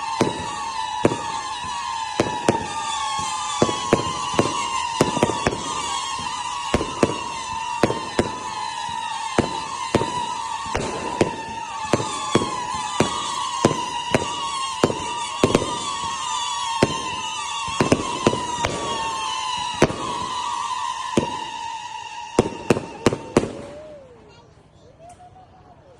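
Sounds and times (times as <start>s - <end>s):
firework bangs: 0.0s - 24.4s
firework whistles falling in pitch: 0.0s - 25.2s.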